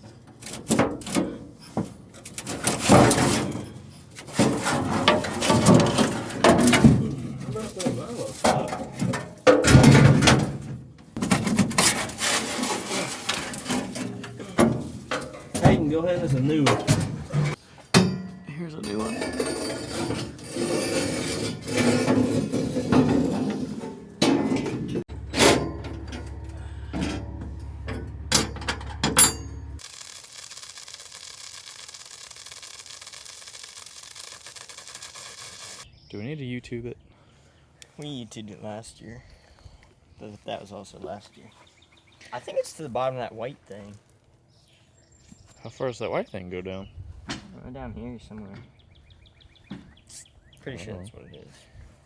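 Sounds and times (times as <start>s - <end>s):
metal tools clanking: 0.2s - 29.8s
rough scraping and rattling: 0.3s - 17.6s, 18.8s - 35.8s.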